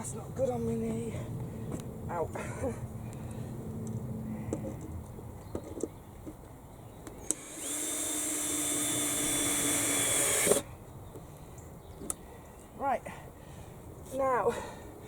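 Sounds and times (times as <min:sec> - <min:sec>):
power drill running: 0:07.2 - 0:10.6.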